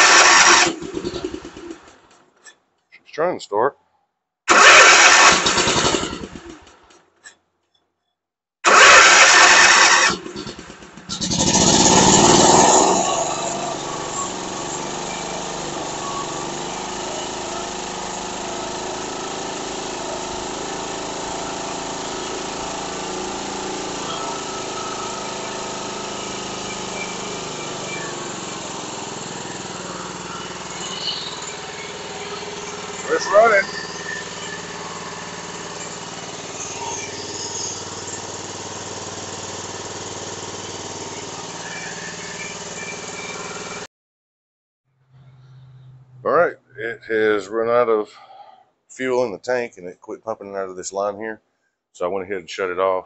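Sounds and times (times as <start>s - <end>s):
mower engine cranking and running: 0.0s - 2.6s, 4.5s - 7.4s, 8.6s - 43.9s.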